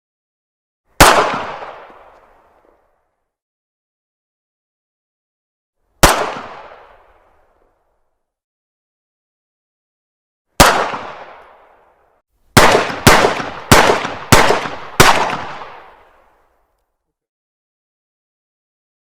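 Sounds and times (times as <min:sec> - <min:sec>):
pistol shots with echo: 0:01.0 - 0:02.1, 0:06.0 - 0:07.2, 0:10.6 - 0:11.7, 0:12.6 - 0:16.2.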